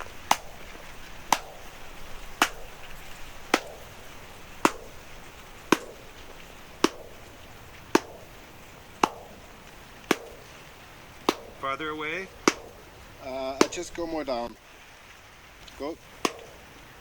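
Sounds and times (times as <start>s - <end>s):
hand claps with echo: 0.0s - 0.6s, 2.4s - 2.8s, 8.0s - 8.4s, 9.0s - 9.5s.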